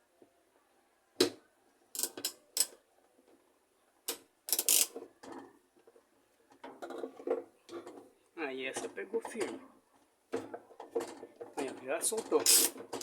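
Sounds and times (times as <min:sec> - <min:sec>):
ratchet wrench clicking: 0:02.0 - 0:02.7, 0:04.5 - 0:04.9, 0:12.4 - 0:12.8.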